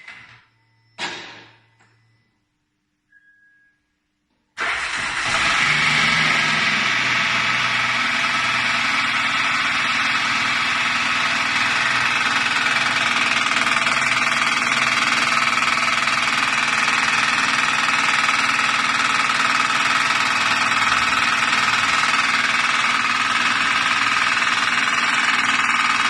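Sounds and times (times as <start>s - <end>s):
car engine knocking: 5.4s - 26.0s.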